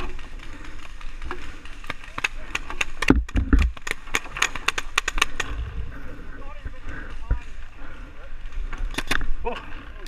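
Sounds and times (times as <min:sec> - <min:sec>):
paintball markers popping: 0:01.8 - 0:05.6.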